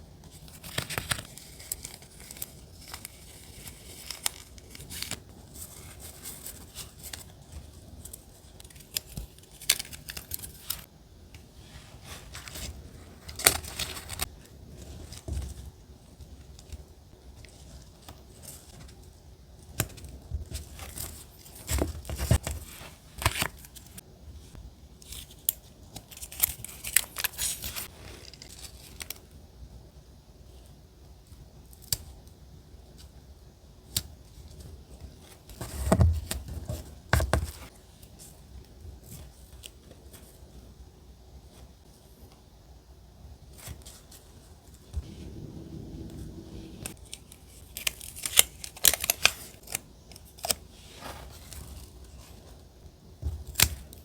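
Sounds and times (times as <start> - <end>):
paper rustling: 0.3 - 10.9, 11.7 - 15.6
paper snipping: 47.7 - 50.6.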